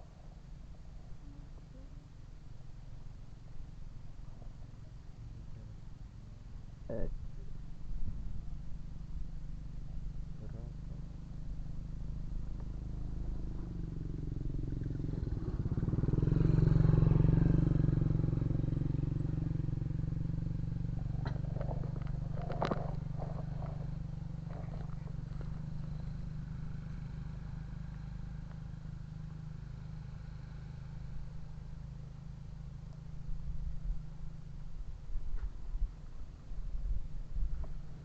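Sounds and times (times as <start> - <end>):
vehicle engine passing: 6.9 - 34.7.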